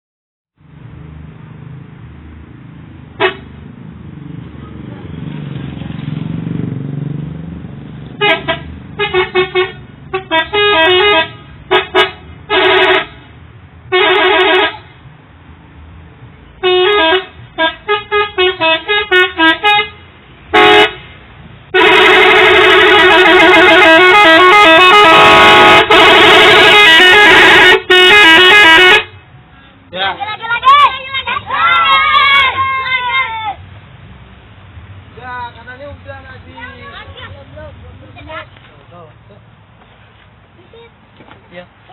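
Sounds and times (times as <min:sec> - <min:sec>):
multi-tone air horns playing tune: 0:08.2 - 0:13.2, 0:13.9 - 0:14.8, 0:16.6 - 0:21.1, 0:21.7 - 0:29.2.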